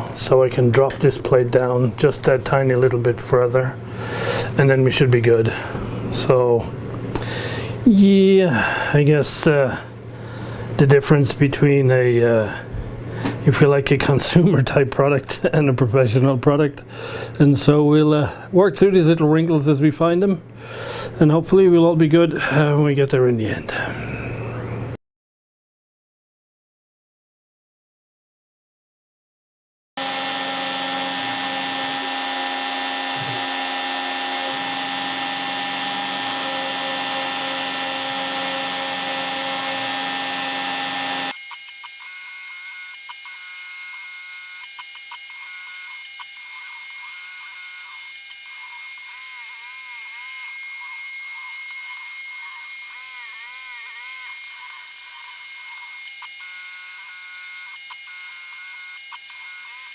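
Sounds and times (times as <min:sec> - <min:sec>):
router motor whine: 0:30.0 - 0:59.9
stepper motors whining: 0:30.0 - 0:59.9.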